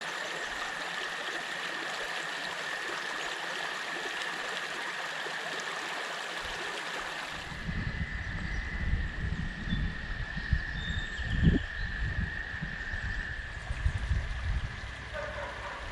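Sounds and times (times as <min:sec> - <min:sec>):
water rushing over waterfall: 0:00.0 - 0:07.6
low rumble with thumps: 0:07.5 - 0:15.9.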